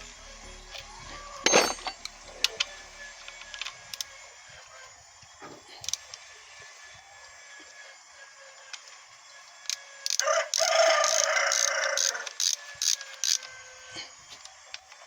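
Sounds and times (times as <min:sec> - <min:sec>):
rooster crowing: 0:10.1 - 0:13.4.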